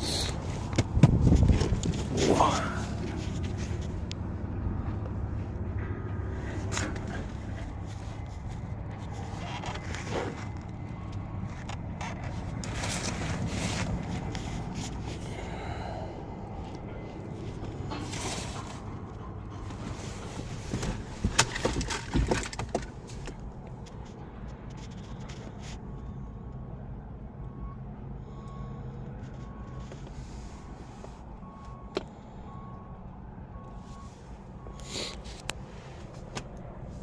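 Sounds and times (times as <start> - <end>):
low hum: 0.0 - 21.0.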